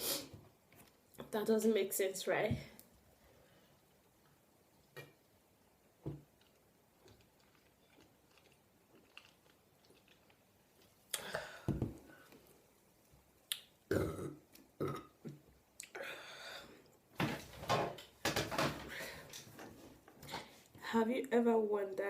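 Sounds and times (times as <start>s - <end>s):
woman burping: 13.9s - 16.1s.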